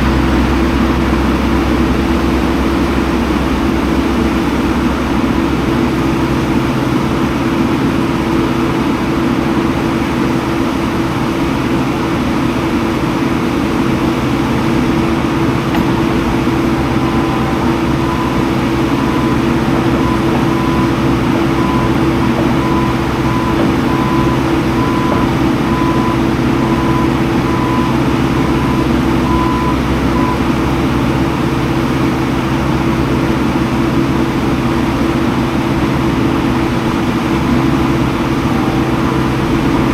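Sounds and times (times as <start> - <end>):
skid steer engine running: 0.0 - 39.9
faint high warning beeps: 15.8 - 30.6.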